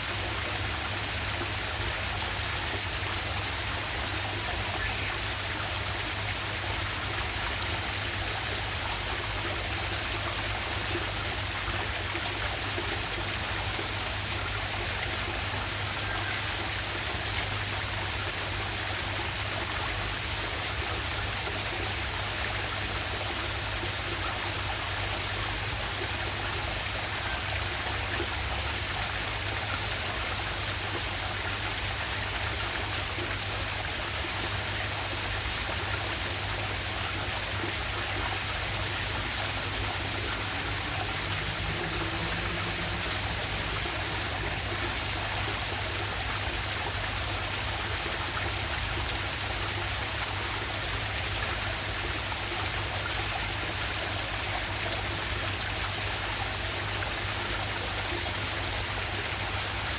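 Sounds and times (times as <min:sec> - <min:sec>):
waterfall rushing: 0:36.4 - 0:47.8.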